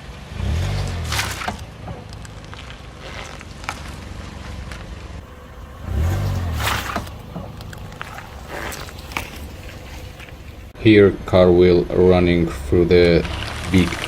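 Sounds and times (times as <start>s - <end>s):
car engine idling: 0.0s - 14.0s
watermelon crunching under tyre: 0.4s - 10.7s, 13.1s - 14.0s.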